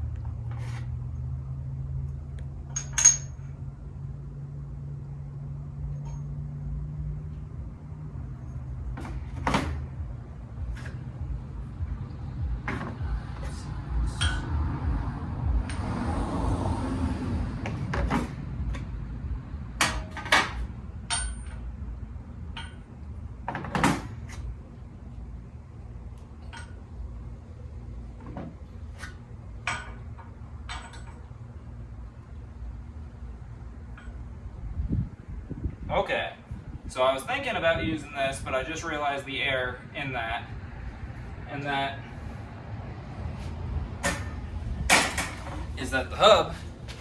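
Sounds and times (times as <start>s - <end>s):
low steady hum: 0.0s - 47.0s
metal parts clinking and knocking: 2.7s - 3.5s, 19.8s - 21.7s, 29.0s - 31.3s.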